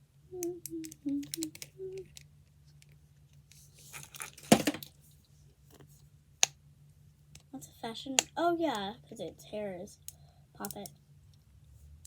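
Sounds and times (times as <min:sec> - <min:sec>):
person humming: 0:00.3 - 0:02.2
small toys clicking and rattling: 0:00.8 - 0:02.9, 0:03.5 - 0:04.9.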